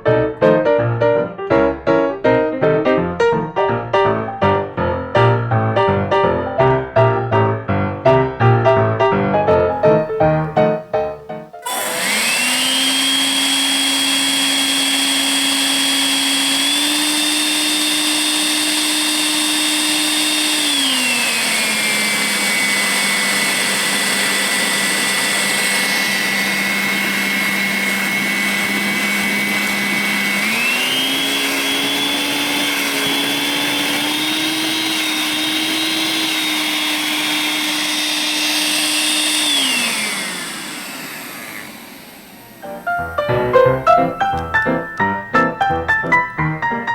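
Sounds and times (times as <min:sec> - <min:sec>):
vacuum cleaner motor whine: 0:09.8 - 0:43.2.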